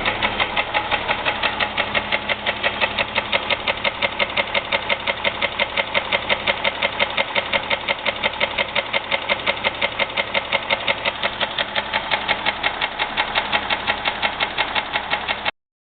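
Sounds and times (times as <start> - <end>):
car engine idling: 0.0 - 15.5
sharp even engine knock: 0.0 - 15.5.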